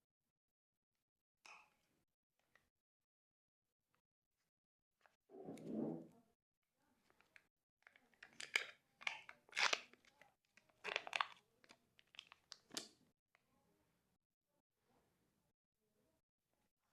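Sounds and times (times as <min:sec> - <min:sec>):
plastic wrapper crinkling: 0:08.2 - 0:12.8.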